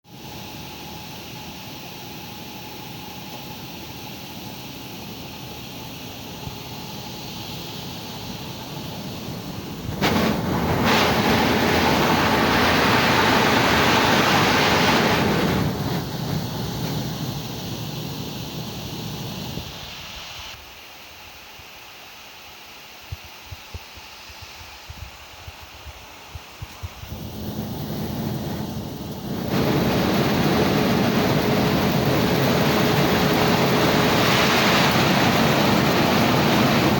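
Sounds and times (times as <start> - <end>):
faint steady hum: 0.1 - 36.9
machine rushing and clattering: 9.7 - 17.5, 27.1 - 36.9.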